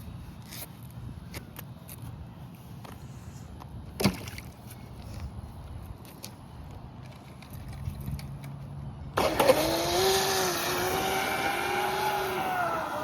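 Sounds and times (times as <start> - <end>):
rc boat motor whining: 9.2 - 13.0.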